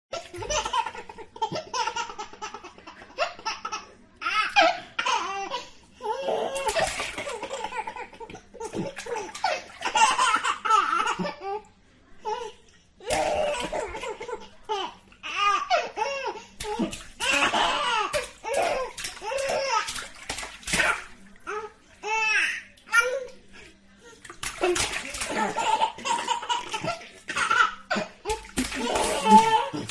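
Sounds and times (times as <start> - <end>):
water splashing: 6.6 - 7.7, 16.6 - 21.4, 24.2 - 29.9.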